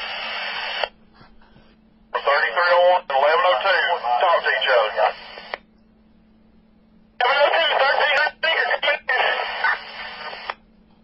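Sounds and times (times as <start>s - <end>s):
low steady hum: 0.0s - 11.0s
radio voice transmission: 2.1s - 5.6s, 7.2s - 10.5s.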